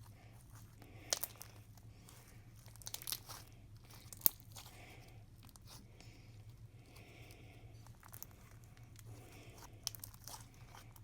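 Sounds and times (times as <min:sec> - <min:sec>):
slime crackling and crunching: 0:00.9 - 0:05.8, 0:07.8 - 0:11.0.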